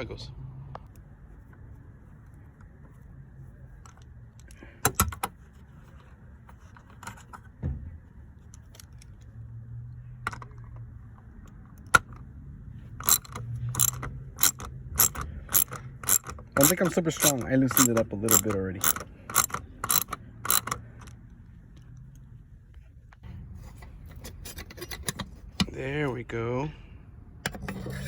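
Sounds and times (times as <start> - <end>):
metal tools clinking: 13.0 - 20.8
ratchet wrench clicking: 13.0 - 21.2.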